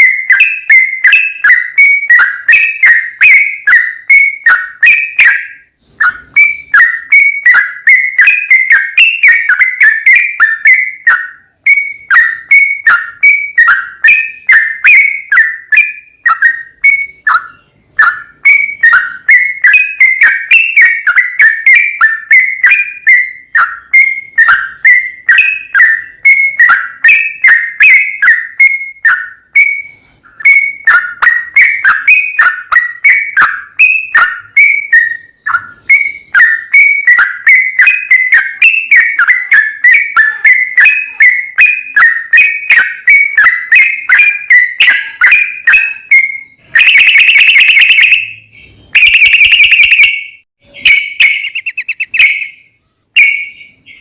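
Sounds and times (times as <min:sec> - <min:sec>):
harsh buzzing bird trills: 0:30.4 - 0:54.0
bird whistling liquid notes: 0:46.8 - 0:54.0.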